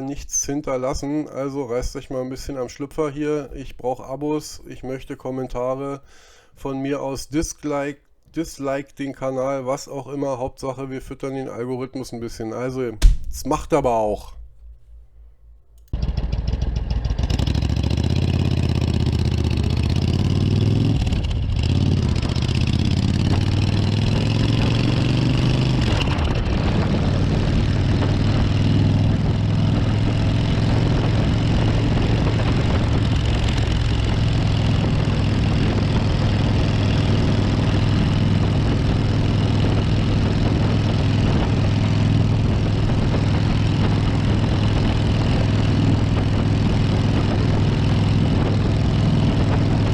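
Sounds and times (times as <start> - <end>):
motorcycle engine revving: 15.9 - 49.9.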